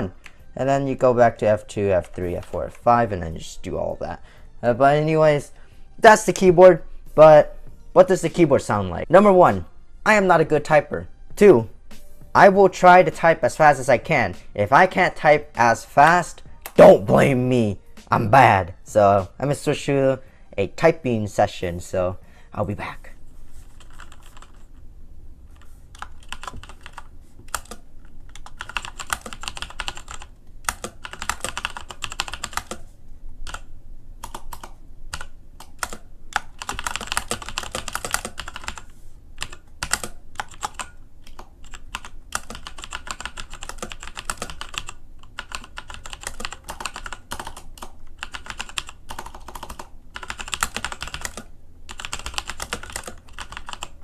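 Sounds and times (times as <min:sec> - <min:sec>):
mechanical keyboard typing: 0:23.8 - 0:24.6, 0:25.6 - 0:32.8, 0:33.5 - 0:54.0.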